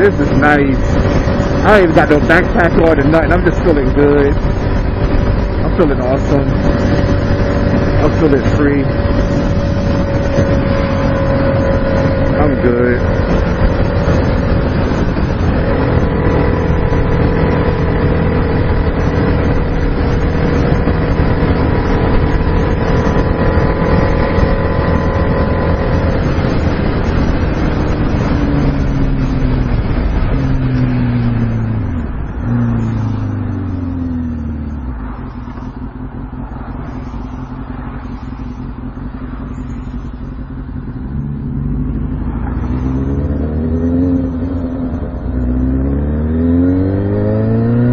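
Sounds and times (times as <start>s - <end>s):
wind rushing: 0.0s - 35.2s
motorcycle engine revving: 0.0s - 47.9s.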